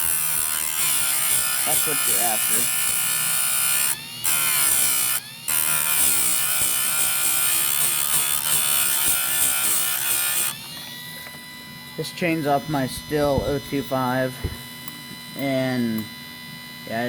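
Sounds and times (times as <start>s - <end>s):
chain sharpener grinding steel: 0.0s - 11.3s, 12.2s - 16.1s.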